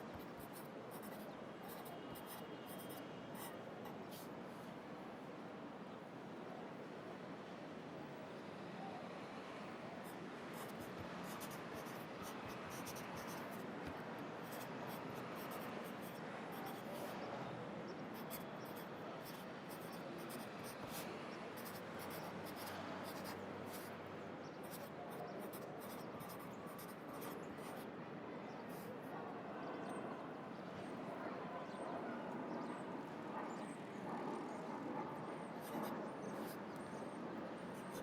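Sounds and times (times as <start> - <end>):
pencil scratching on paper: 0.0 - 4.3, 10.5 - 17.2, 18.1 - 23.9, 24.6 - 27.8, 35.6 - 36.8, 37.8 - 38.0.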